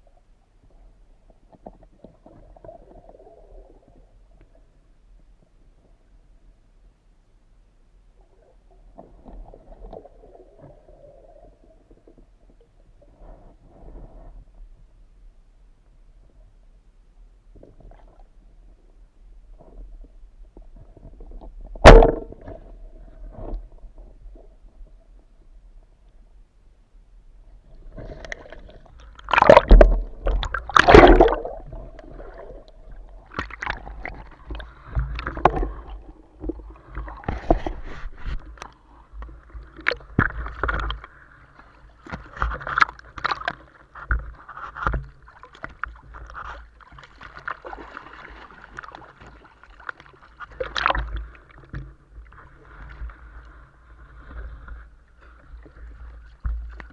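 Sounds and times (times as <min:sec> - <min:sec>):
water gurgling and sloshing: 0:17.6 - 0:26.0, 0:27.1 - 0:56.9
knocks and bumps: 0:21.8 - 0:22.4.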